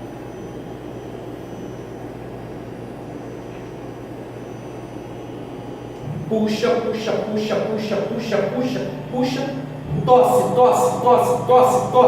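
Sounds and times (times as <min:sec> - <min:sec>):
machine blower humming: 0:06.0 - 0:12.0.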